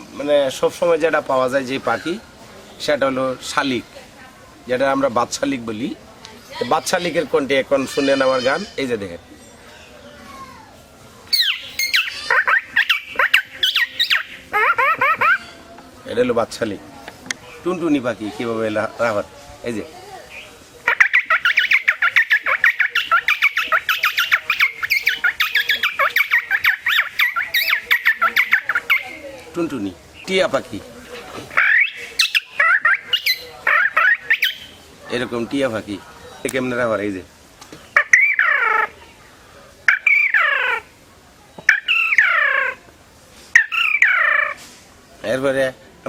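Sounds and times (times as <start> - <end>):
man imitating bird squawks: 11.4 - 15.5.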